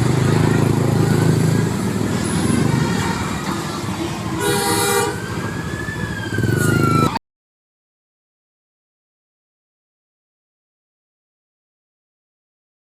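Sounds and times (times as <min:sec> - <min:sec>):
diesel bus engine rumbling: 0:00.0 - 0:07.2
bus horn blast: 0:03.9 - 0:05.4.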